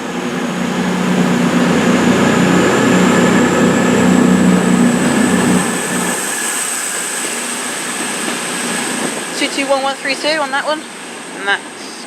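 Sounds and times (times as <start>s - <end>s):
diesel engine drone: 0.0s - 9.5s
thin high whine: 0.0s - 10.8s.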